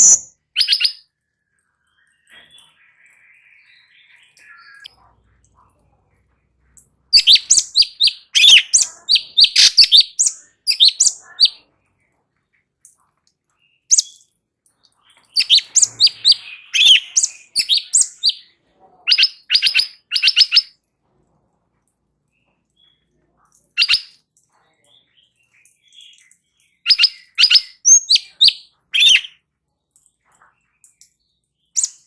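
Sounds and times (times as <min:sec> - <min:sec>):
bird singing high chirping notes: 0:00.0 - 0:01.0, 0:01.9 - 0:04.9, 0:07.1 - 0:11.6, 0:13.9 - 0:14.3, 0:15.2 - 0:18.5, 0:19.1 - 0:20.7, 0:26.8 - 0:29.4.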